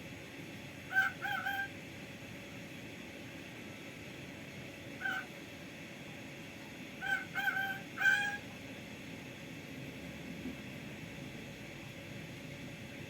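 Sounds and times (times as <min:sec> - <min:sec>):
bird imitating a rooster's crow: 0:00.9 - 0:01.8, 0:05.0 - 0:05.3, 0:07.0 - 0:08.5.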